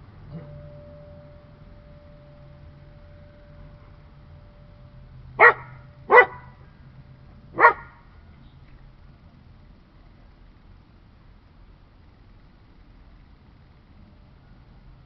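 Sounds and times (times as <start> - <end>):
dog barking: 5.4 - 6.5, 7.6 - 8.0.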